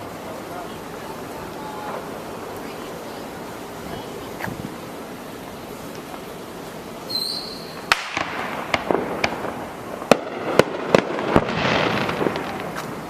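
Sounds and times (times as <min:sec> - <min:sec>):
crackling hiss: 0:00.0 - 0:13.0
firework bangs and pops: 0:07.0 - 0:13.0
firework whistle: 0:07.0 - 0:13.0.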